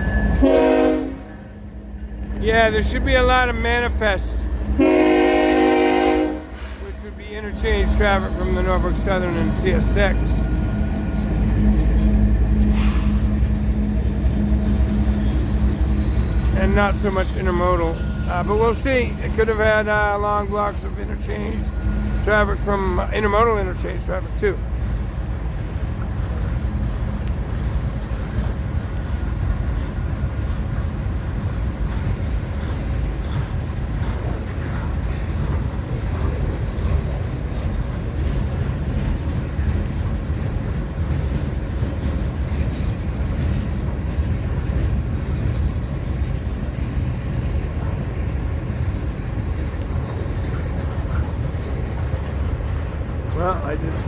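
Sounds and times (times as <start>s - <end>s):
freight train wheels rumbling: 0.0s - 54.0s.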